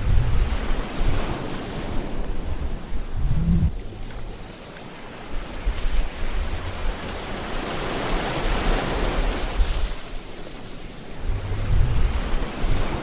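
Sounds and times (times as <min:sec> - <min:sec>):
low rumble: 0:00.0 - 0:00.7, 0:02.4 - 0:03.9, 0:11.2 - 0:12.8
ocean waves breaking: 0:00.0 - 0:13.0.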